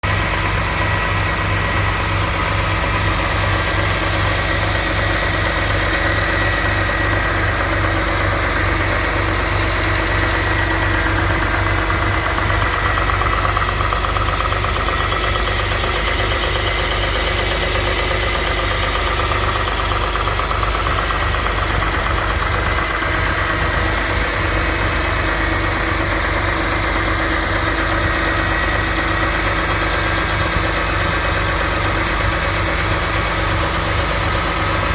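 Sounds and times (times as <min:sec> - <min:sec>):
car engine idling: 0:00.0 - 0:34.9
engine rattle: 0:00.0 - 0:34.9.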